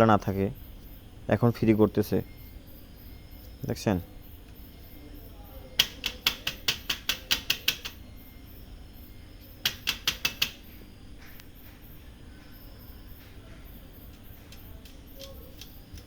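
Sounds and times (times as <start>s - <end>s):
rapid mechanical clicking: 4.4s - 8.1s, 9.6s - 10.7s, 13.1s - 16.0s.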